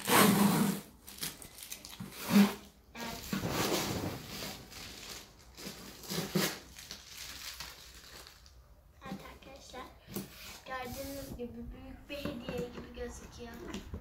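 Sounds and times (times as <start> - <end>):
cardboard packaging rustling: 0.0 - 8.6.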